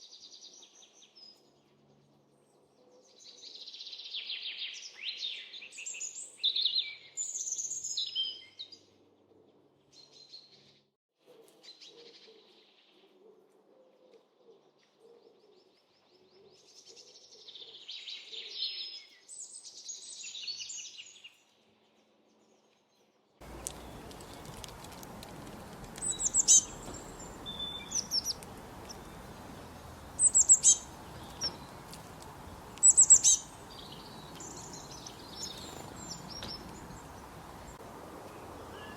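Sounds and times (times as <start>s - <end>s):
songbirds singing and chirping: 0.0s - 10.9s, 14.3s - 38.9s
steady background hiss: 23.4s - 38.9s.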